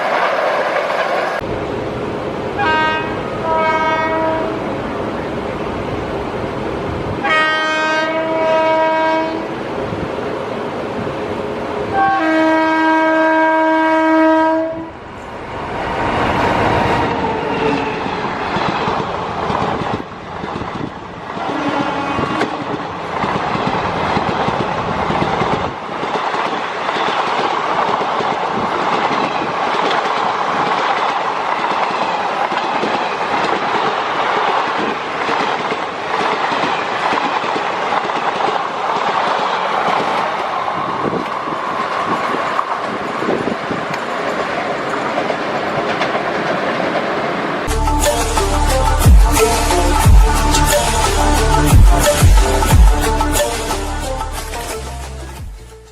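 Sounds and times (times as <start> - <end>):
train horn blasts: 2.6 - 4.7, 7.2 - 9.5, 11.9 - 15.0, 21.5 - 22.6
train wheels clattering over rails: 17.1 - 47.2.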